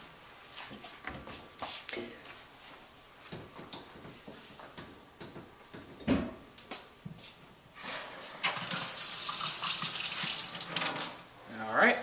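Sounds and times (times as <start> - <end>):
tap water running: 8.4 - 11.2.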